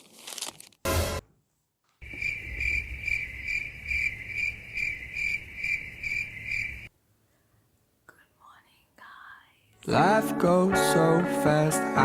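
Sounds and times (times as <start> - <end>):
cricket chirping: 2.0 - 6.9.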